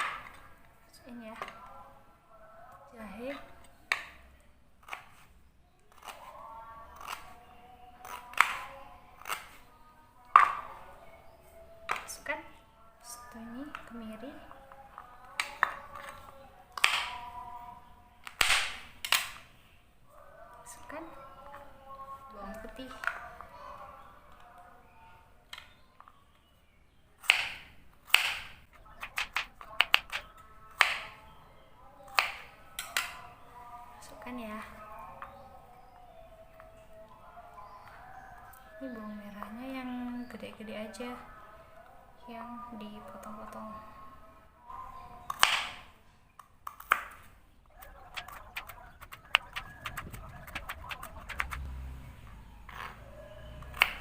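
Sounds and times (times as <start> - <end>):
ginger pieces knocking in blender jar: 29.0 - 30.2.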